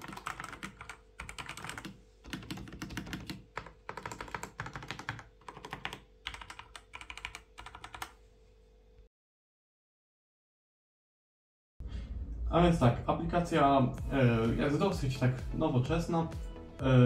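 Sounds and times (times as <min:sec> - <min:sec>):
mechanical keyboard typing: 0:00.0 - 0:08.2.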